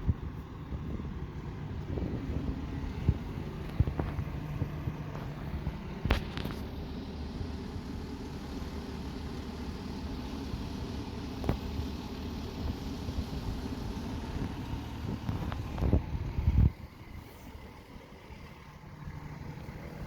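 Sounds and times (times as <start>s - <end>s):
fire truck engine idling: 0.0s - 20.0s.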